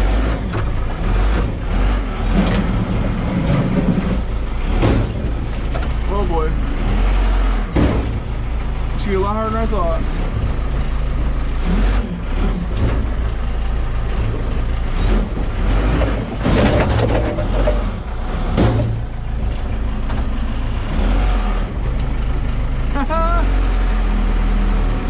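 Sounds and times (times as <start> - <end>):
diesel engine running under load: 0.0 - 25.0.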